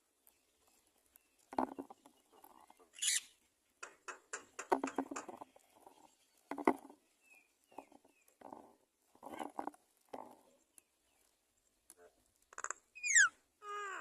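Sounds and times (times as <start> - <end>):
nestling squeaking: 0.6 - 6.4, 12.0 - 14.0.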